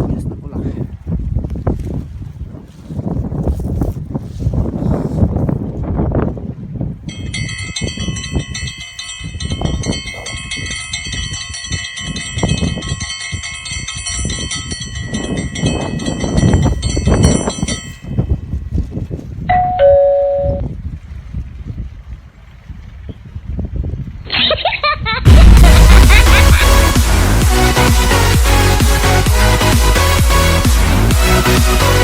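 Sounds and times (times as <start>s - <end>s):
wind buffeting microphone: 0.0s - 28.6s
bright ringing tone: 7.1s - 18.3s, 19.5s - 20.6s
two-note chime: 19.5s - 20.6s.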